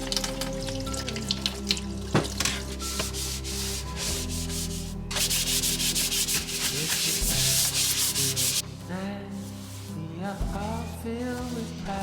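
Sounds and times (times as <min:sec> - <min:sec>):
stiff brush scrubbing hard surface: 0:02.7 - 0:08.6, 0:09.4 - 0:12.0.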